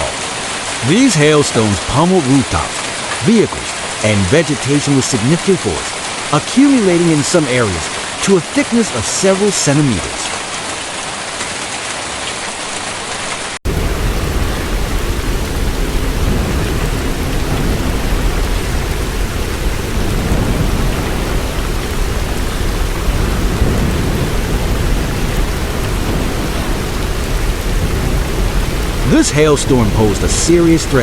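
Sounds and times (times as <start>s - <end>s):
heavy hail and rain pounding: 0.0s - 31.0s
deep rumble: 13.7s - 31.0s.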